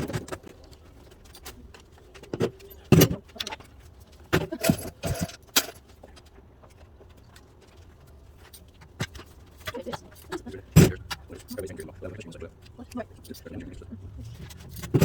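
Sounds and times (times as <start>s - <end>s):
metal tools clinking and clattering: 4.4s - 5.8s, 14.2s - 15.0s.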